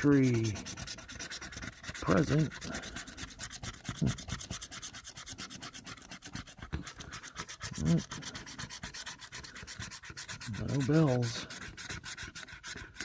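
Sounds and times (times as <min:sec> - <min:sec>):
lottery ticket being scratched: 0:00.0 - 0:13.0.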